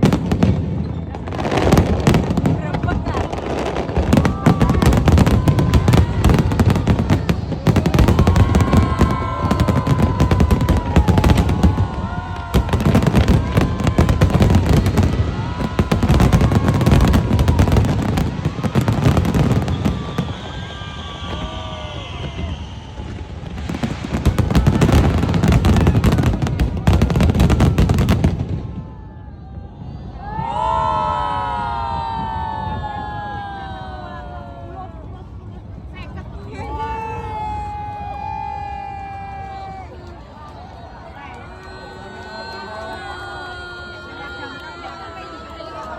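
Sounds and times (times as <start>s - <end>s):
fireworks bangs and crackling: 0.0s - 34.0s.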